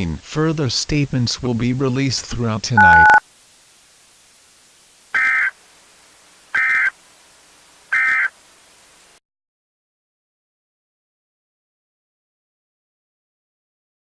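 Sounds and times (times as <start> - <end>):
faint hiss: 0.1 - 9.2
buzzy digital data tones: 2.8 - 3.2.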